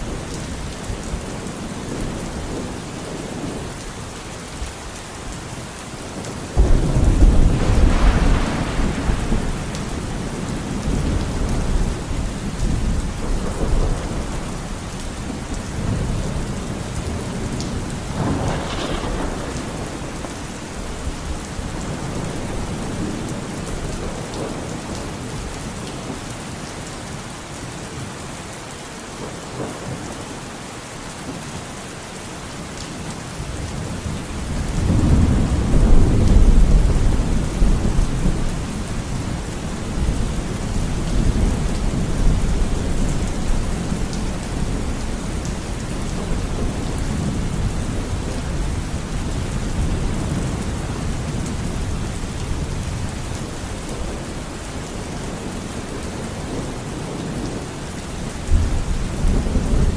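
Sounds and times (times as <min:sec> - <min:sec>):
steady rain: 0:00.0 - 0:59.9
thunder rumbling: 0:06.2 - 0:25.1, 0:33.6 - 0:54.5.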